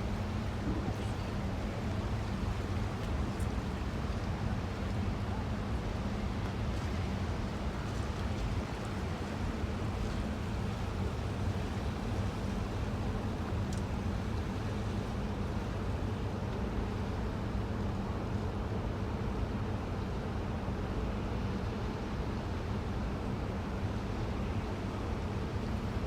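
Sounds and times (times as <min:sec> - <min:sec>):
ship engine rumble: 0:00.0 - 0:17.6
wind: 0:00.0 - 0:26.0.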